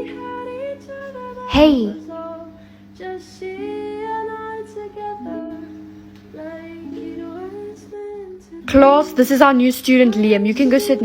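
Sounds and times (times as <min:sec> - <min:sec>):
slow soft melody: 0:00.0 - 0:11.0
steady low hum: 0:00.0 - 0:11.0.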